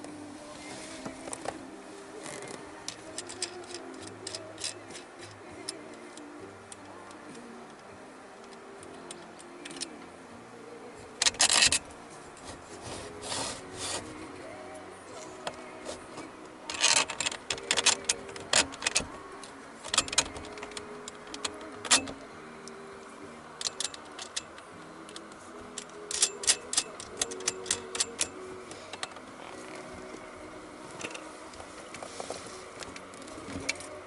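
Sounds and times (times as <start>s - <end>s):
steady background hiss: 0.0s - 34.0s.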